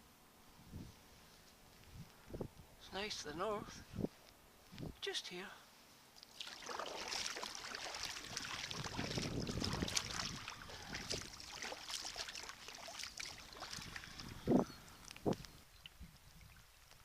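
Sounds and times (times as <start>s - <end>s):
kayak paddle strokes: 6.2s - 14.4s
water splashing around boat: 6.2s - 14.5s.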